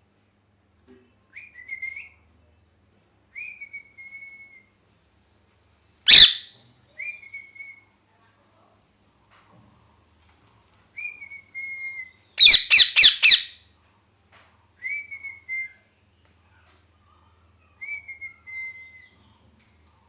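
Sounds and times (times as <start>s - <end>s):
parrot screeching: 6.1s - 6.5s, 12.4s - 13.6s
parrot whistling: 6.1s - 6.5s, 12.4s - 13.6s.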